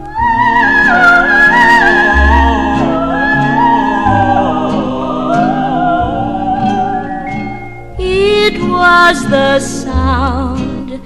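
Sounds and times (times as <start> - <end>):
high wordless vocal with vibrato: 0.0 - 7.3, 8.0 - 11.0
orchestral accompaniment: 0.0 - 9.1.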